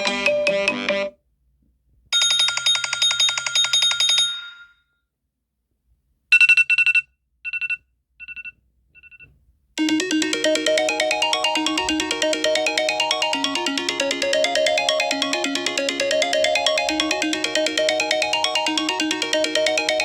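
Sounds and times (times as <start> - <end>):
melodic phone ringtone: 0.0 - 1.1, 9.8 - 20.0.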